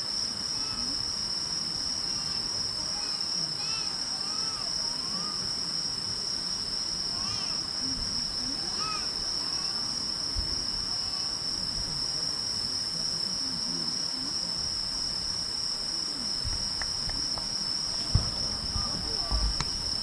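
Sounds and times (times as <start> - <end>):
crickets chirping: 0.0 - 20.0
faint low thumps: 16.4 - 20.0.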